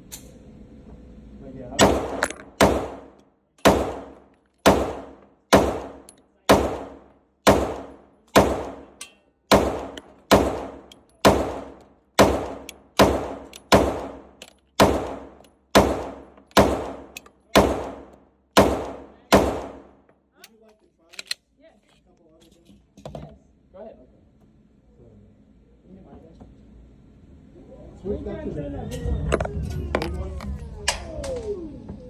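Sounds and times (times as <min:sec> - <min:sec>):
handgun shots echoing: 0:01.8 - 0:20.0.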